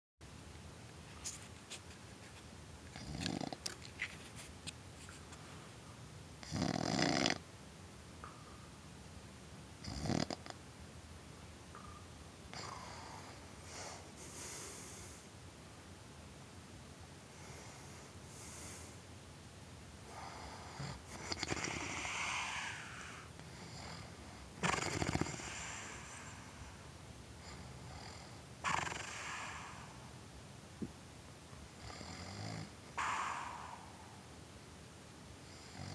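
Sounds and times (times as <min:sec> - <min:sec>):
heavy snoring: 0:03.0 - 0:03.6, 0:06.4 - 0:07.4, 0:09.8 - 0:10.5, 0:20.1 - 0:26.5, 0:27.4 - 0:30.0, 0:31.8 - 0:34.0, 0:35.5 - 0:35.9.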